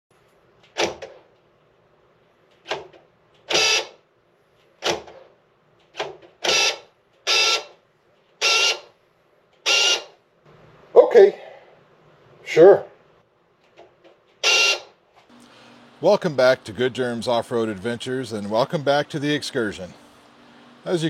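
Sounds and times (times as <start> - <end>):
power-lock actuator buzzing: 2.6 - 4.0, 5.9 - 7.8, 8.4 - 8.9, 9.6 - 10.2, 14.4 - 15.6.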